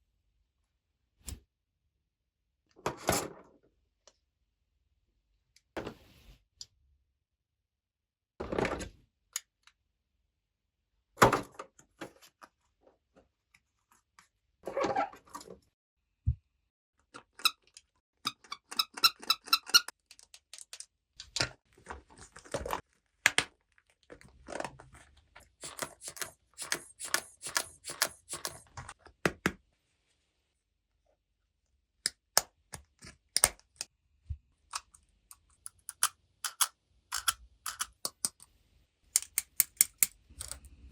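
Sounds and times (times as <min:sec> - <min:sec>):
plastic toy pieces clicking: 0:35.3 - 0:38.4, 0:39.2 - 0:40.7.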